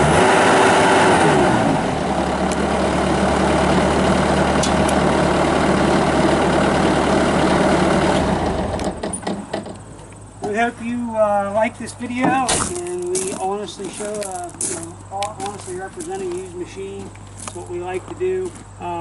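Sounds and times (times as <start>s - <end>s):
diesel engine idling: 0.0s - 12.2s.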